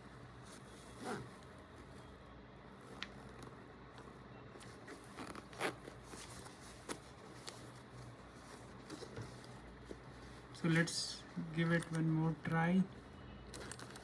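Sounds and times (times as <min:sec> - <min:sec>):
zipper scraping and clicking: 0:00.8 - 0:01.5, 0:04.6 - 0:07.7.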